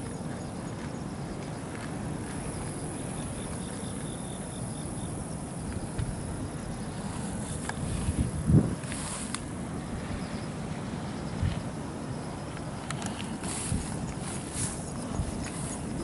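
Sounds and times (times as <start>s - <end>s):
insect chirps: 0.0s - 16.0s.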